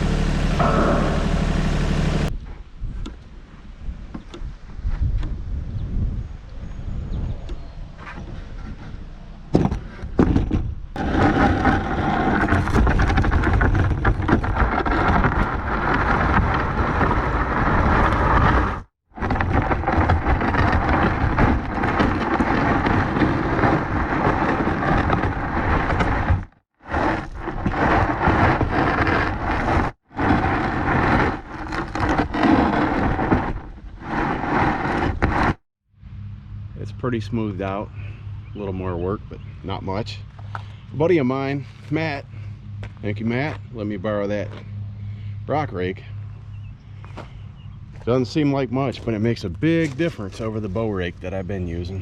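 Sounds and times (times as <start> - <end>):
gravel scraping over gravel: 0.0 - 2.3, 11.0 - 35.6, 36.8 - 46.1, 46.9 - 52.0.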